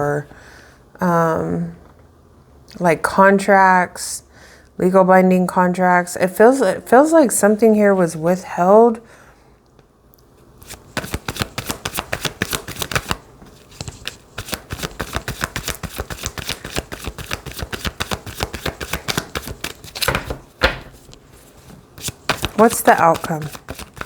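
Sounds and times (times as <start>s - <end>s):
cards being shuffled: 10.6s - 24.0s
loud knock: 20.1s - 21.0s.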